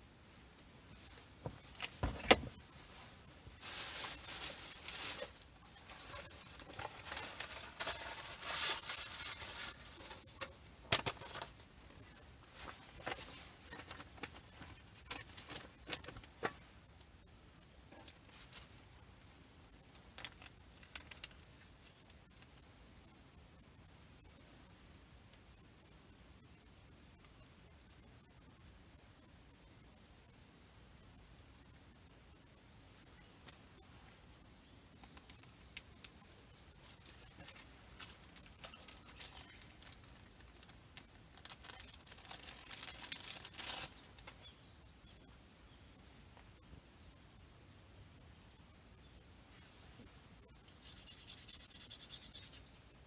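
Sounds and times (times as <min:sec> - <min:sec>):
camping gear clicks and knocks: 0:01.4 - 0:02.7.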